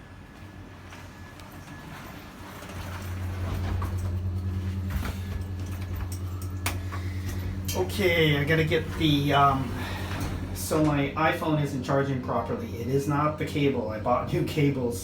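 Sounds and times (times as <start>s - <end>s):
low motor hum: 0.0s - 15.0s.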